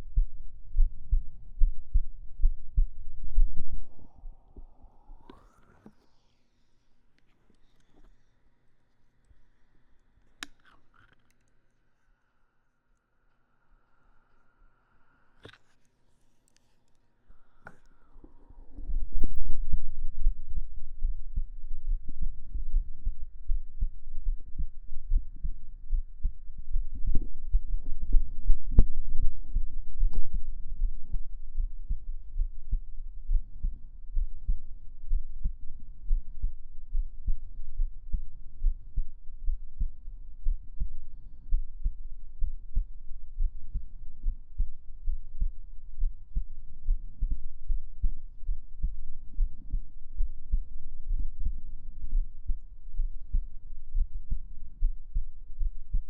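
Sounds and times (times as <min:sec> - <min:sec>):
heartbeat thumping: 0:00.0 - 0:05.3, 0:18.8 - 0:56.0.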